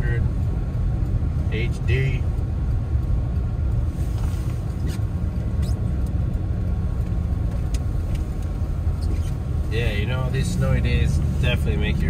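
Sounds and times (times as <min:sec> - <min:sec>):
tyre and engine rumble in car: 0:00.0 - 0:12.0
faint ticks: 0:00.2 - 0:09.5.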